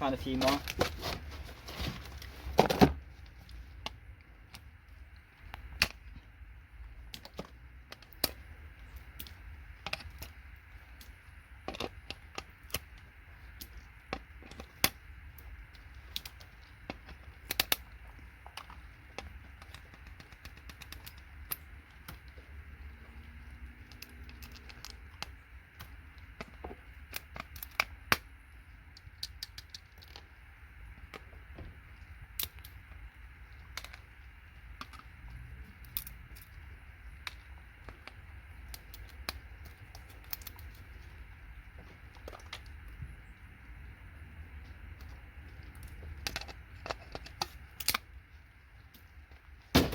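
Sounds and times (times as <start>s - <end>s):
low steady hum: 0.0s - 49.9s
hand tools clicking on circuit boards: 18.6s - 22.3s.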